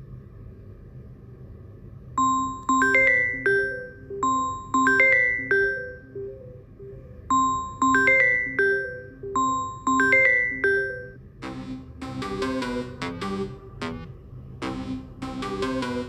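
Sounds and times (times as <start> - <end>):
faint low hum: 0.0 - 16.0
bell-like ringtone melody: 2.2 - 13.6.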